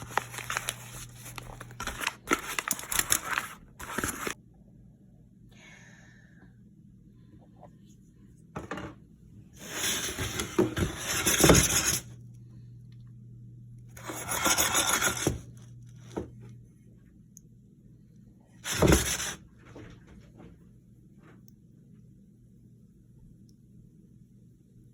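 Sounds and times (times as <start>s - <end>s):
rustling and scraping: 0.0s - 4.4s
steady low hum: 0.0s - 24.9s.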